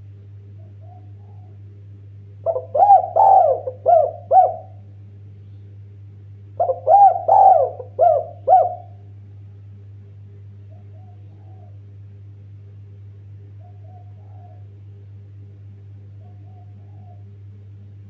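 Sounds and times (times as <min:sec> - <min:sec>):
steady low hum: 0:00.0 - 0:18.0
dove cooing: 0:00.5 - 0:01.7, 0:02.4 - 0:04.8, 0:06.6 - 0:09.0, 0:10.7 - 0:11.8, 0:13.5 - 0:14.8, 0:16.1 - 0:17.4.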